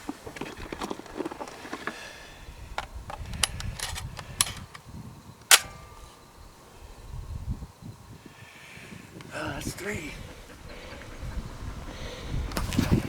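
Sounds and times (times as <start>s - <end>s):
shotgun shot: 5.5s - 6.1s.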